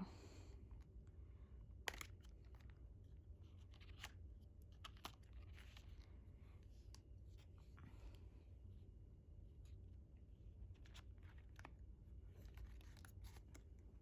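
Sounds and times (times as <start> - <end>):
sharp paper snaps: 1.8 - 2.7
paper rustling: 12.4 - 13.7.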